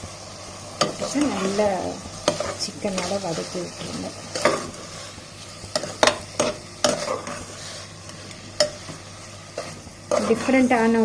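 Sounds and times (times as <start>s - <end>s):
chicken and onions sizzling in oil: 0.0s - 11.0s
spatula scraping and tapping pan: 2.2s - 10.6s.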